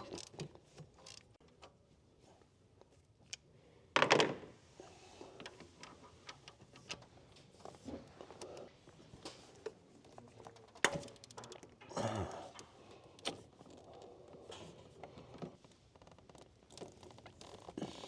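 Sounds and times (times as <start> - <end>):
hand tools clicking on metal: 10.7 - 11.9.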